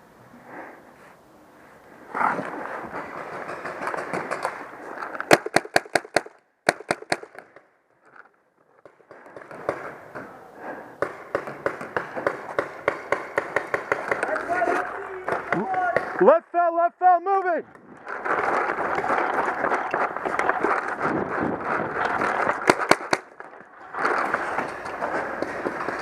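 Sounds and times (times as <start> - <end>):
paintball marker firing: 5.3 - 7.5, 11.0 - 14.4, 22.6 - 23.4.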